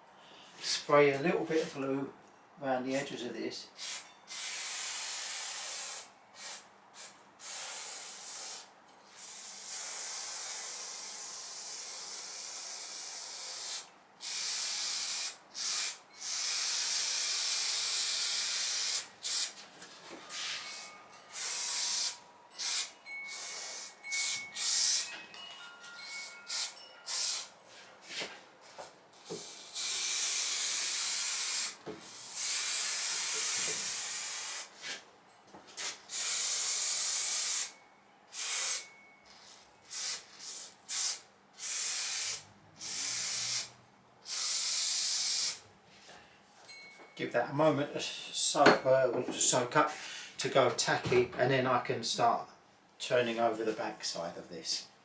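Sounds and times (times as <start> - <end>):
aerosol can spraying: 3.8 - 19.6, 20.4 - 25.1, 26.5 - 27.5, 29.3 - 34.7, 35.8 - 37.7, 38.4 - 38.8, 39.9 - 43.7, 44.3 - 45.6.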